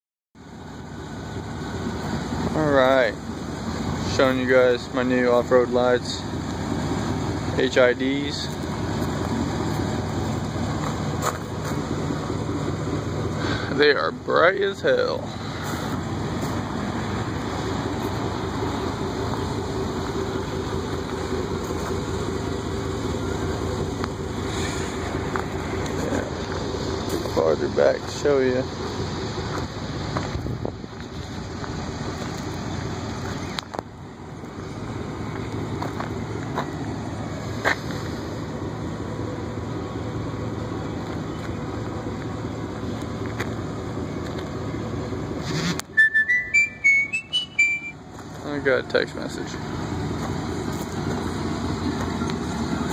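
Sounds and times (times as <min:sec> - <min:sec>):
pickup truck engine idling: 0:00.4 - 0:52.9.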